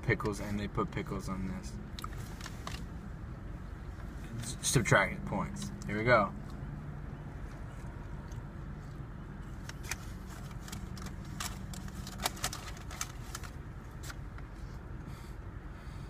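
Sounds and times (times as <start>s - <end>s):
steady low hum: 0.0s - 16.0s
biting and chewing: 7.3s - 14.2s
paper wrapper crinkling: 9.8s - 14.2s.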